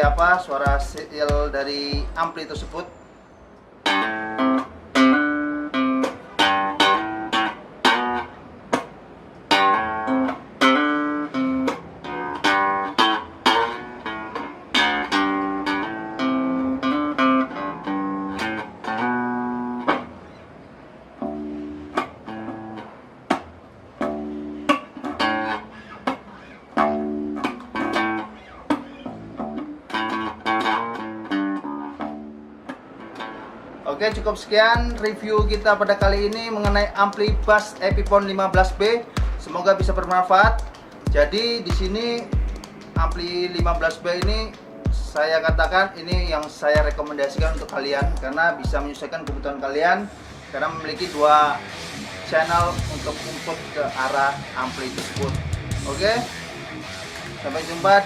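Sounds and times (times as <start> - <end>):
plucked electric bass notes: 0.0 - 2.8, 21.2 - 33.4, 34.0 - 58.0.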